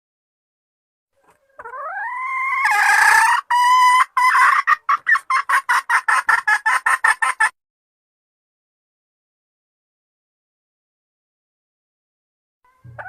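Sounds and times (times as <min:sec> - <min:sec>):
hen cackling: 0:01.2 - 0:07.6, 0:12.7 - 0:13.0
hen clucking: 0:01.2 - 0:07.6, 0:12.7 - 0:13.0.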